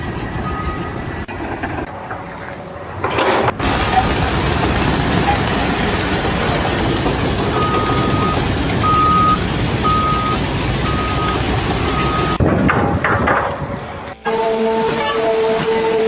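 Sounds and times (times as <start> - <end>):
heavy vehicle engine running: 0.0 - 16.0
reversing alarm beeping: 0.4 - 1.0, 6.1 - 14.1.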